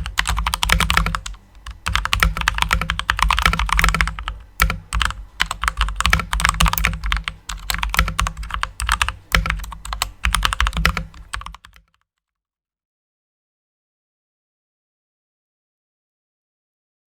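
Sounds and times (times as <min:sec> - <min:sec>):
mechanical keyboard typing: 0:00.0 - 0:12.0.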